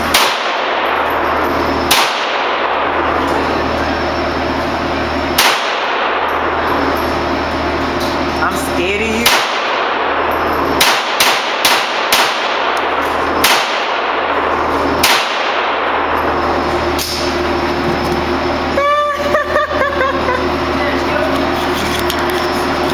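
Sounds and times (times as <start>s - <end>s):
gunshots: 0.0s - 3.2s, 5.3s - 6.6s, 9.2s - 16.1s.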